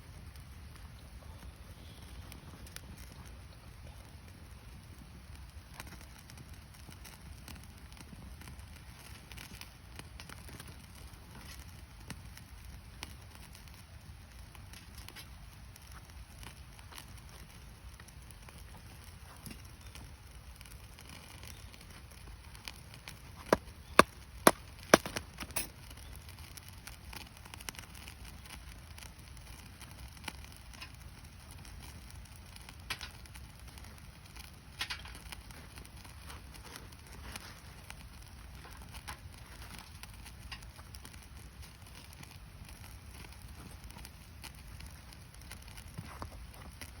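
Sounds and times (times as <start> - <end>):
campfire crackling: 0.0 - 47.0
wood bursting with sharp pops: 20.7 - 26.4.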